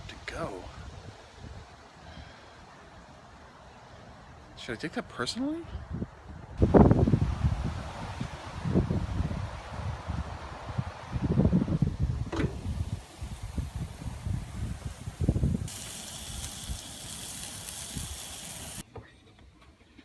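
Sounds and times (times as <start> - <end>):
wind buffeting microphone: 5.9 - 18.8
even high hiss: 11.8 - 18.8.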